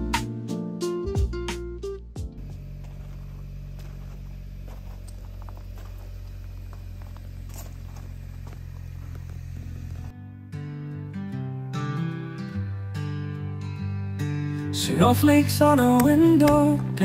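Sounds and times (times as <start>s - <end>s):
music: 0.0s - 3.3s, 9.6s - 17.0s
vehicle engine hum: 2.4s - 10.2s.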